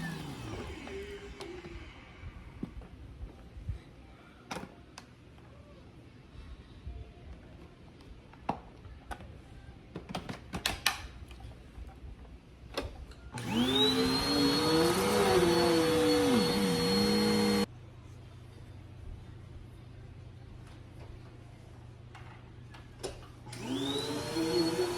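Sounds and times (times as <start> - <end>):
vacuum cleaner motor whine: 0.0 - 2.8, 13.4 - 17.7, 23.5 - 24.9.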